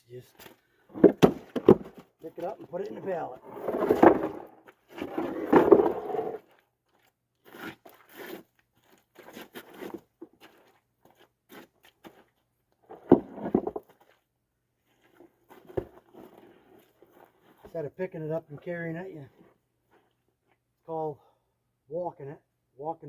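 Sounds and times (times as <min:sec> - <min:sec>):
stone slabs grating and knocking: 0:00.9 - 0:06.5, 0:12.9 - 0:14.1.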